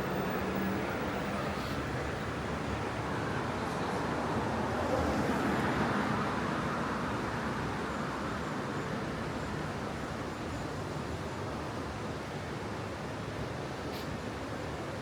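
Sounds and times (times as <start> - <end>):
road traffic rushing: 0.0 - 7.3.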